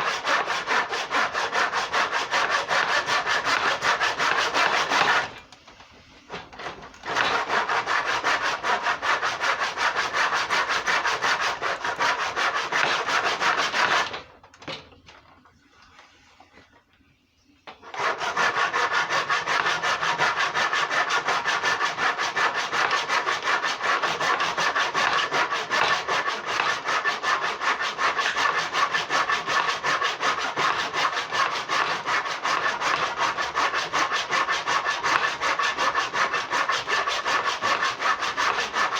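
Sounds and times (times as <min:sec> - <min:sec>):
hand saw sawing: 0:00.0 - 0:05.4, 0:06.3 - 0:14.3, 0:17.8 - 0:38.9.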